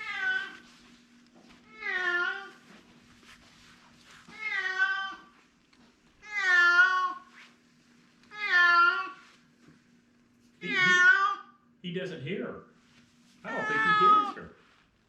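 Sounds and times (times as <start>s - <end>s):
cat meowing: 0.0s - 0.6s, 1.7s - 2.6s, 4.3s - 5.3s, 6.2s - 7.3s, 8.3s - 9.2s, 10.6s - 11.6s, 13.4s - 14.5s.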